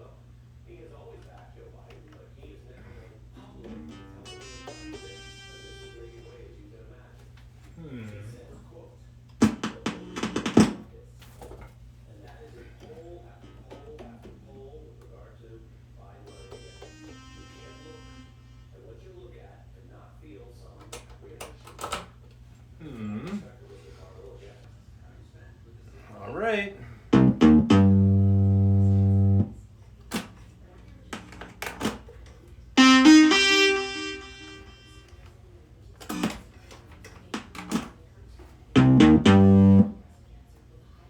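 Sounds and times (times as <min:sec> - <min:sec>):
low electrical hum: 0:00.0 - 0:41.0
bright synth note: 0:27.1 - 0:29.5, 0:32.8 - 0:35.1, 0:38.8 - 0:40.0.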